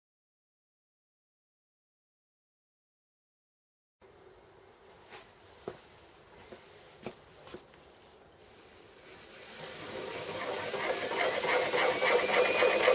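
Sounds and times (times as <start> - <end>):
machine motor spinning up: 8.5 - 12.9.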